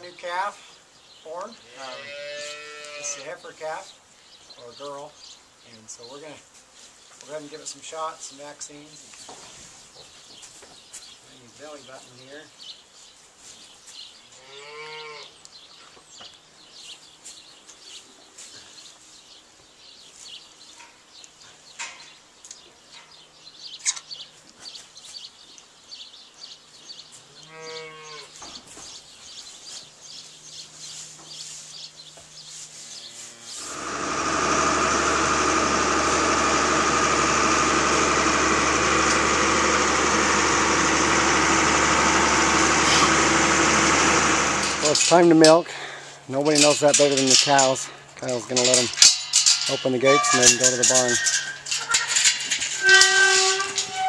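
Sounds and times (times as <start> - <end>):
calf bleating: 1.7 - 3.3, 14.4 - 15.3, 27.4 - 28.4
loud steady mechanical noise: 33.6 - 45.1.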